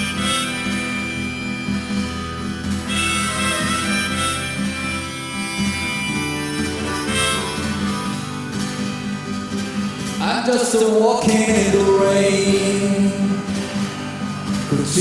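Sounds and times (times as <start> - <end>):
harmonica melody: 0.0 - 10.5, 11.3 - 15.0
guitar: 0.0 - 15.0.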